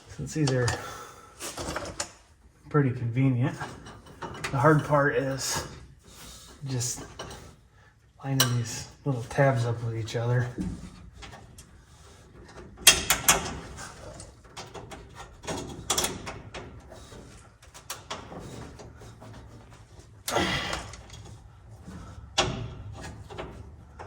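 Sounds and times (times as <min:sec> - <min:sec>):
metal tools clinking and knocking: 0:08.3 - 0:08.9.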